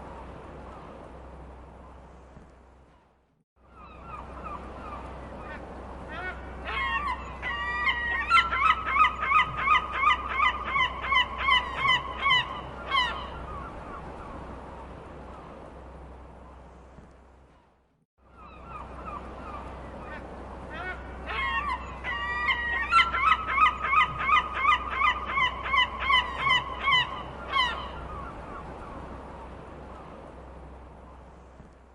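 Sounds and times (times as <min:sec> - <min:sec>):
seagulls calling: 0:03.6 - 0:15.6, 0:18.3 - 0:30.2.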